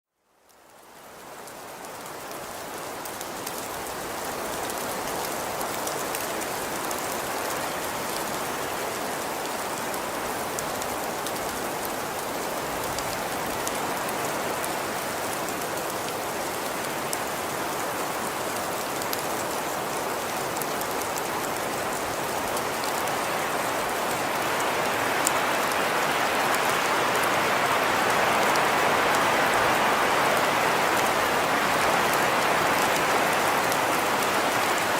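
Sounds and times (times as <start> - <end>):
steady rain falling: 0.0 - 34.9
raindrop ticks: 3.0 - 4.0, 9.8 - 17.3.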